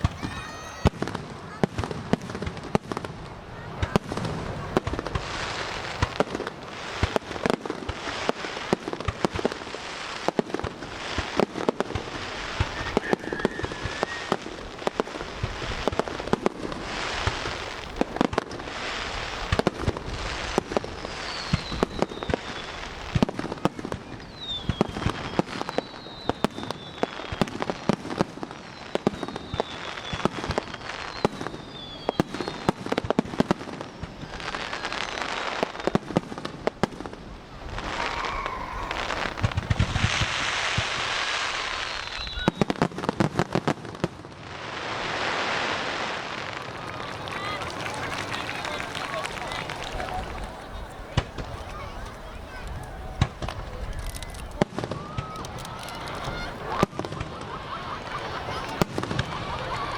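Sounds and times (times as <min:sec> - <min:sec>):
fireworks bangs and crackling: 0:00.0 - 0:59.9
falling whistles: 0:12.6 - 0:14.5, 0:21.0 - 0:22.9, 0:24.2 - 0:27.6, 0:28.8 - 0:32.8, 0:37.8 - 0:40.0, 0:41.7 - 0:42.8, 0:46.5 - 0:52.4.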